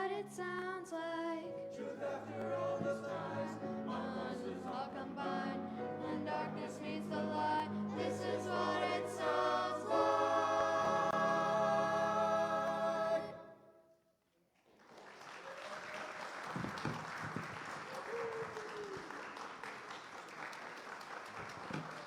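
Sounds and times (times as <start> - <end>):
choir singing chord: 1.4 - 13.8
audience applause: 14.6 - 22.0.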